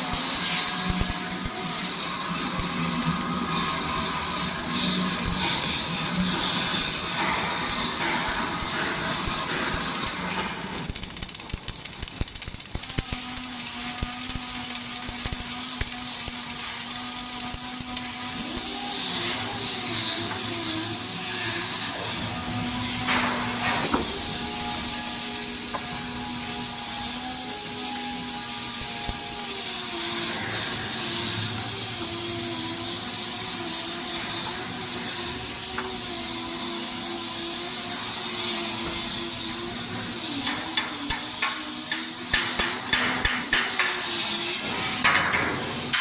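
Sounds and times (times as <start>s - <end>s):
welding crackling hiss: 0.0s - 46.0s.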